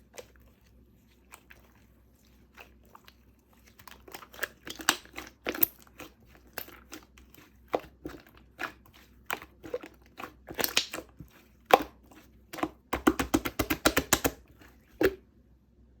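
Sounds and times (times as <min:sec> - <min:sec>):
slime sticky pops and clicks: 0:13.0 - 0:14.4.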